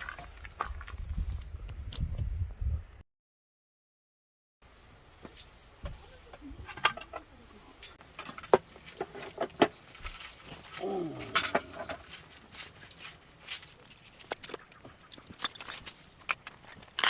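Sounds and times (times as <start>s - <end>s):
small hard objects clinking: 7.9s - 17.0s.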